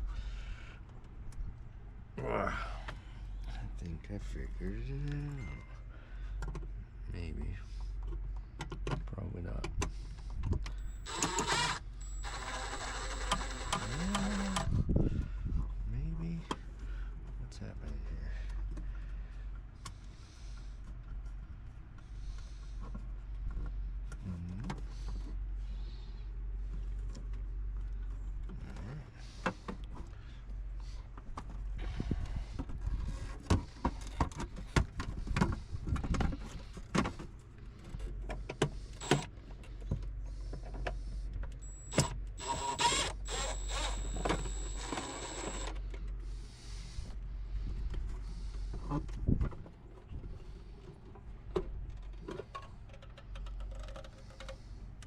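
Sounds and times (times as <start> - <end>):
steady low hum: 0.0 - 55.0
small electric motor whirring: 10.7 - 14.8, 39.0 - 39.3, 41.6 - 45.8
tools clicking and scraping: 51.9 - 55.0.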